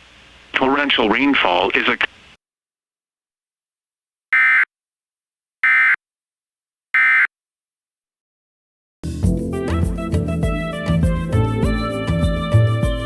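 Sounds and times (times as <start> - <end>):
music: 9.0 - 13.0.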